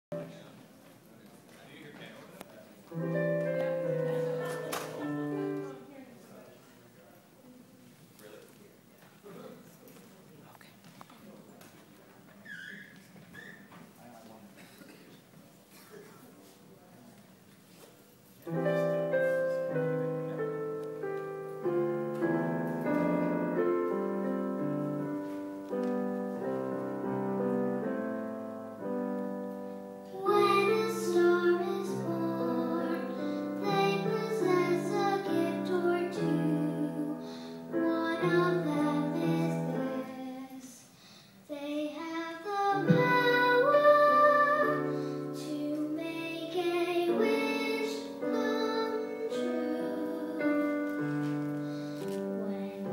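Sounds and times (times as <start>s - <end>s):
piano chords: 2.9s - 5.9s, 18.5s - 40.5s, 42.0s - 52.9s
person singing: 30.1s - 40.7s, 41.6s - 51.2s.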